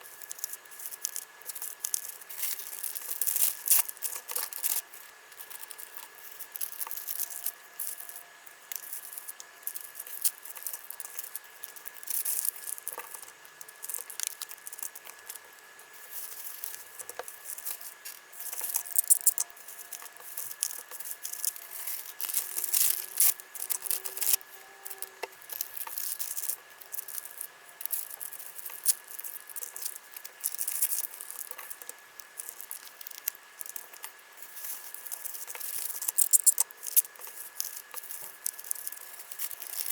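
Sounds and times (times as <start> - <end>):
plastic packaging crinkling: 0.1 - 39.9
faint steady high tone: 23.7 - 25.3.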